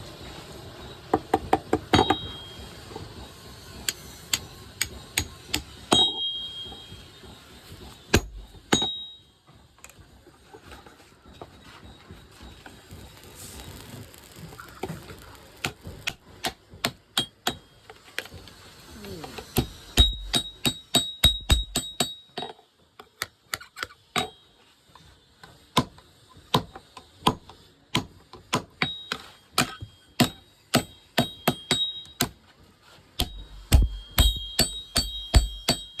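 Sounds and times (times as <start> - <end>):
hammer striking steel on anvil: 1.3 - 2.8, 3.8 - 7.2, 8.1 - 9.3, 16.0 - 17.8, 19.3 - 22.6, 24.2 - 24.5, 28.0 - 32.4, 33.2 - 36.0.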